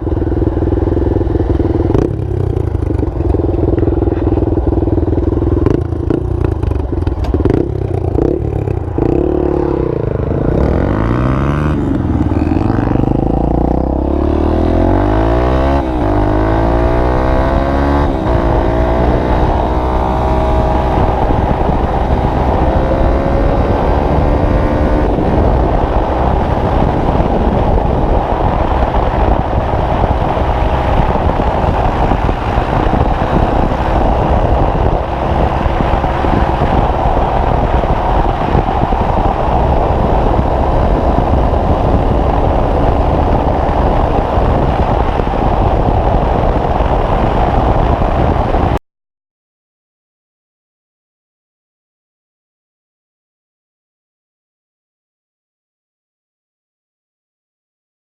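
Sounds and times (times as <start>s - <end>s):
motorcycle rattling on rough ground: 0.0s - 14.0s
motorcycle engine revving: 0.0s - 48.8s.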